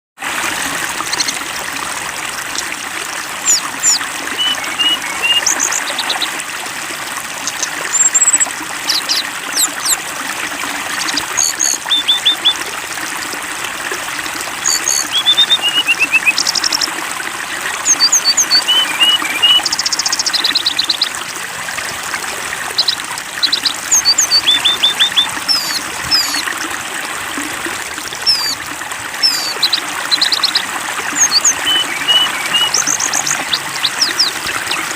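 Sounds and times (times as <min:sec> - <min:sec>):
water trickling: 0:00.2 - 0:34.9
small birds chirping: 0:03.4 - 0:06.4, 0:07.4 - 0:10.0, 0:10.9 - 0:12.6, 0:14.6 - 0:16.9, 0:17.6 - 0:21.1, 0:22.6 - 0:26.5, 0:28.2 - 0:28.6, 0:29.2 - 0:34.9.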